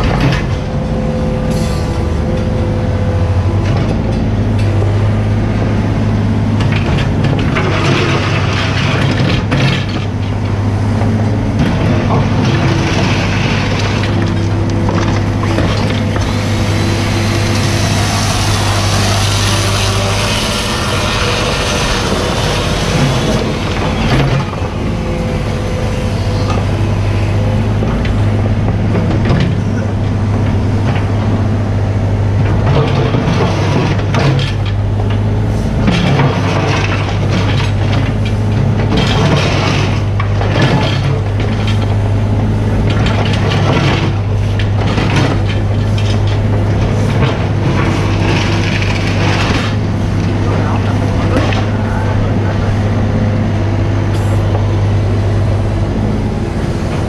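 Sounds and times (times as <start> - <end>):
excavator diesel engine running: 0.0 - 57.0
bucket cracking and scraping: 11.6 - 26.7.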